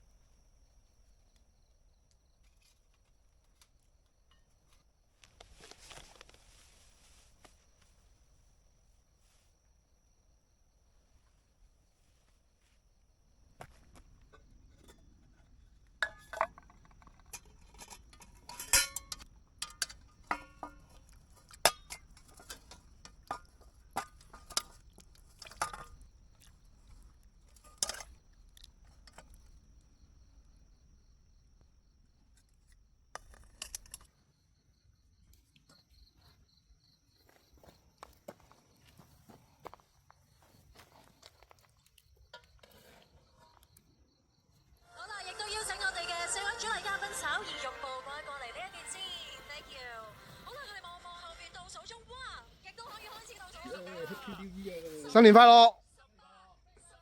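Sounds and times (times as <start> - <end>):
cookware clinking: 16.0 - 26.0, 27.6 - 28.1.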